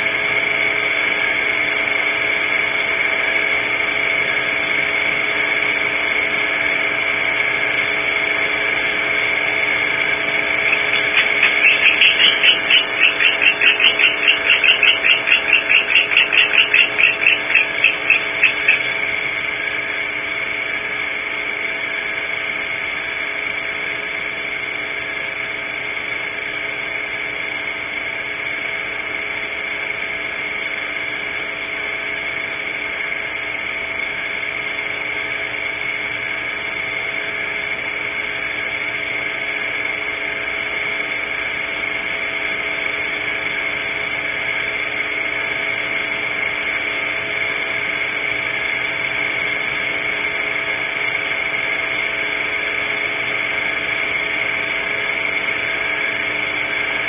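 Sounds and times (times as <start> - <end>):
faint hum: 0.0 - 57.0
rapid short high calls: 10.5 - 19.0.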